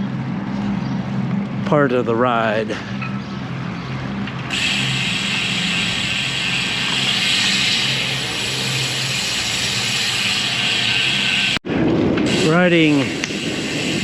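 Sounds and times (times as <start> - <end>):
low hum: 0.0 - 12.4
wind and road noise hiss: 4.3 - 14.0.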